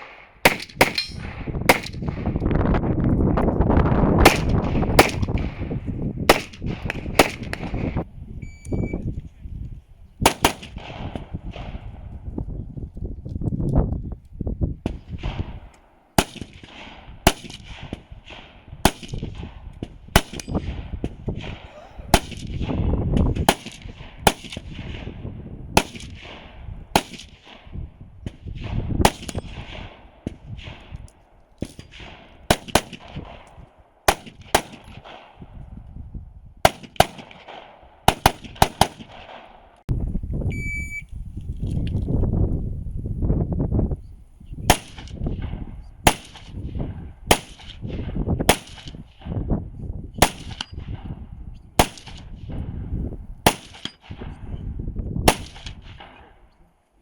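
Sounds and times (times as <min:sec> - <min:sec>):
gunshots: 0:00.0 - 0:02.4, 0:04.2 - 0:08.0, 0:10.2 - 0:12.0, 0:14.8 - 0:31.0, 0:31.6 - 0:35.4, 0:36.6 - 0:39.7, 0:44.7 - 0:49.4, 0:50.2 - 0:51.2, 0:51.8 - 0:52.7, 0:53.4 - 0:54.4, 0:55.3 - 0:56.4
short electronic beep: 0:08.4 - 0:09.0, 0:40.5 - 0:41.1.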